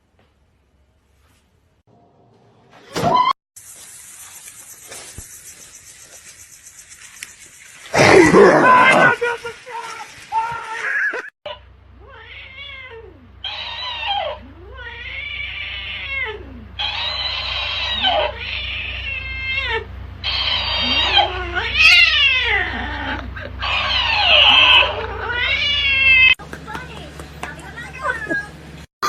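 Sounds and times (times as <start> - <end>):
cat yowling: 8.0 - 9.2, 12.1 - 16.6, 20.6 - 26.4.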